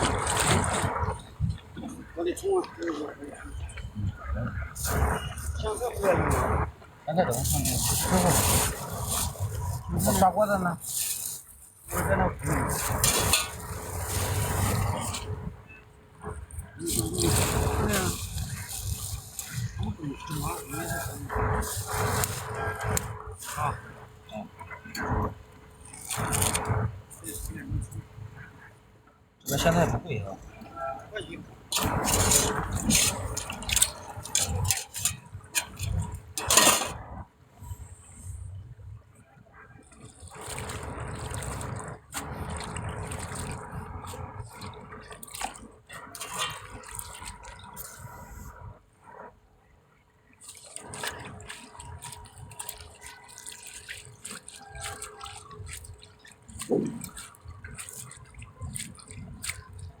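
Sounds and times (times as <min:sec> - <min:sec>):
water splashing and dripping: 0:00.0 - 0:28.6, 0:29.5 - 0:37.2, 0:39.8 - 0:48.6, 0:50.2 - 1:00.0
cookware and utensils clattering: 0:12.7 - 0:15.2, 0:31.7 - 0:37.0.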